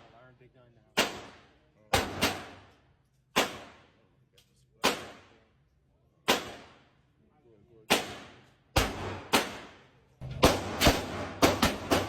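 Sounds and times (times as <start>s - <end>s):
gunshots with echo: 2.0s - 2.6s, 7.9s - 12.0s.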